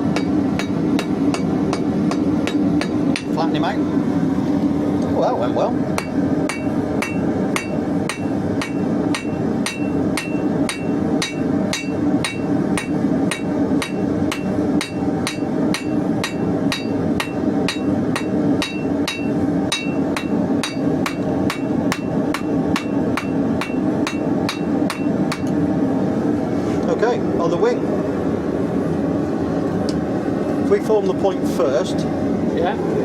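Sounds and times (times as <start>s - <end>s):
hammer striking hot steel: 0.0s - 3.6s, 5.9s - 25.7s.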